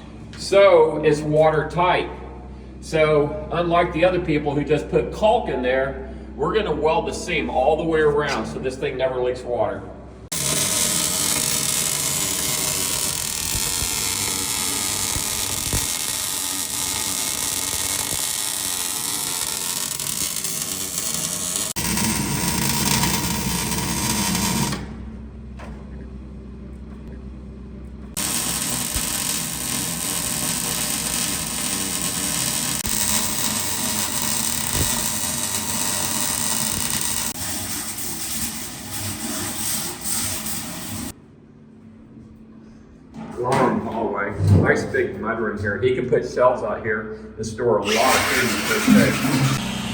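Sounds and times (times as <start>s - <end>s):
arc welding crackling buzz: 10.3s - 25.0s, 28.1s - 41.2s, 47.9s - 49.9s.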